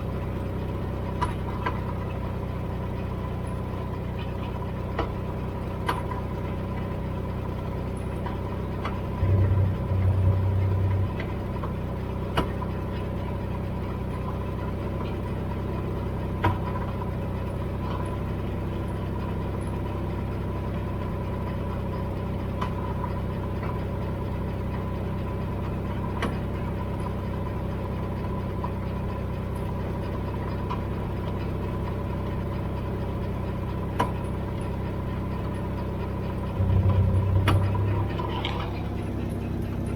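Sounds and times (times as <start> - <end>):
car engine idling: 0.0 - 39.9
low hum: 8.2 - 13.8, 36.2 - 39.9.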